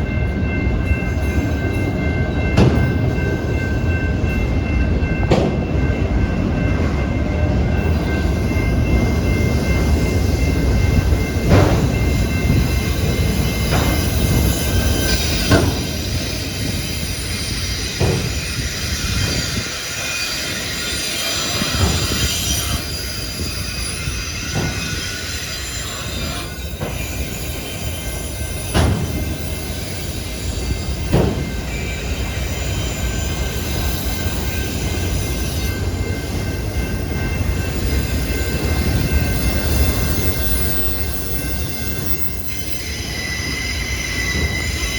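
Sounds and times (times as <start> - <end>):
train cars rumbling: 0.0 - 44.9
high wheel squeal: 12.7 - 28.8, 36.8 - 44.9.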